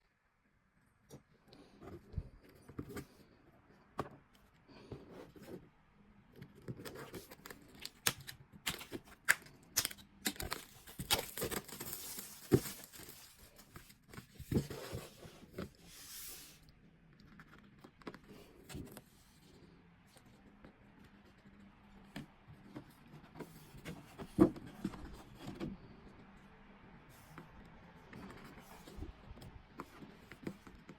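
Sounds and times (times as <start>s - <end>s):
wrapping crinkling and tearing: 7.2s - 14.0s.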